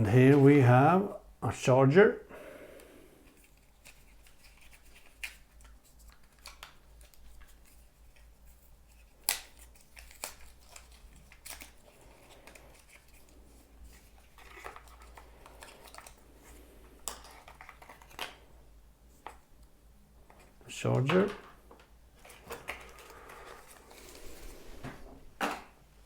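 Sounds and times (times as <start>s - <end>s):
packaging rustle: 3.3s - 18.4s, 22.2s - 24.8s
packaging clicks and taps: 17.0s - 18.4s.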